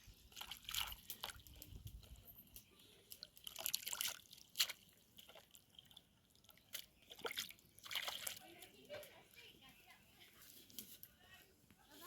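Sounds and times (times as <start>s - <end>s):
splashing and dripping water: 0.0s - 9.6s.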